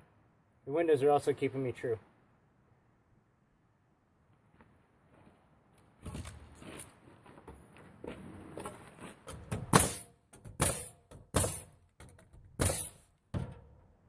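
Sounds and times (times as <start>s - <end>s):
nails driven into siding: 9.2s - 13.9s.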